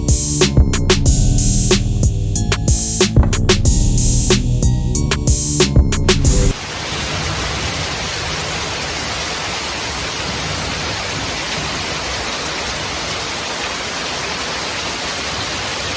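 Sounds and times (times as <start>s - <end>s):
heavy rain: 6.3s - 15.9s.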